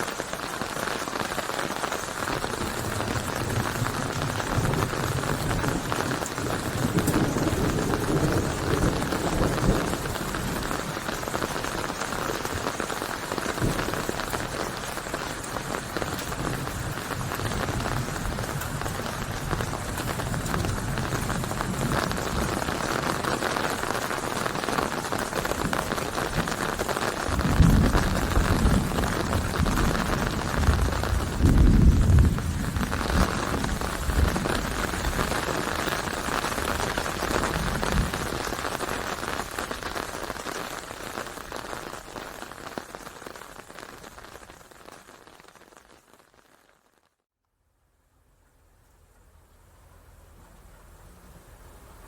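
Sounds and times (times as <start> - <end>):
steady rain pattering: 0.0 - 52.0.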